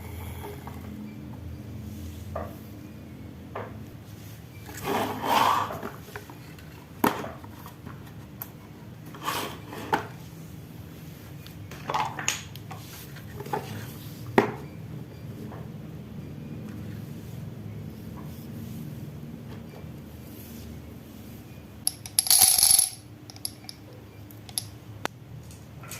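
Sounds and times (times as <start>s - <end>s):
marbles rolling down wooden track: 21.9s - 23.6s.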